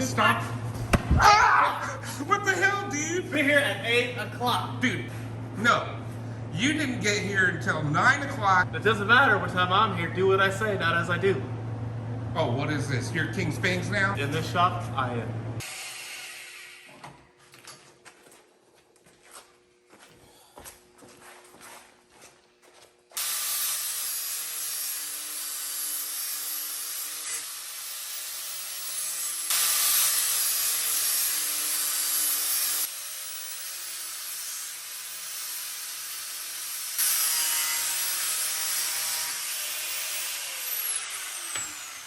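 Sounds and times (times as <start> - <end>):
power grinder grinding metal: 23.2 - 42.0.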